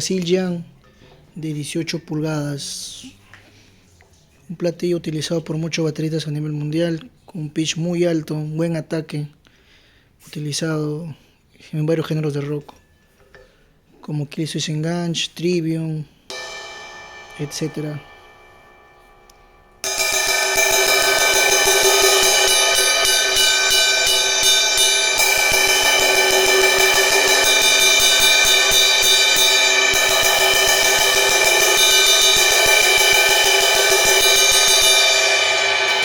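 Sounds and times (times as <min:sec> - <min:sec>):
crash cymbal played with stick: 0:16.3 - 0:36.0.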